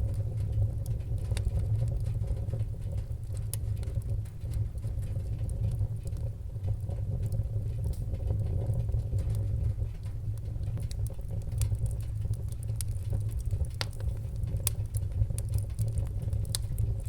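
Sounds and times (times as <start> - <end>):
fire crackling and popping: 0.0 - 17.0
low rumble of flames: 0.0 - 17.0.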